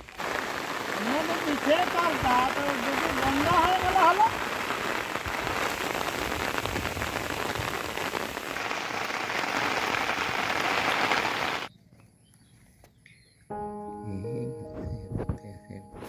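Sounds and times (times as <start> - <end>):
steady rain falling: 0.0 - 11.7
music: 13.5 - 16.0.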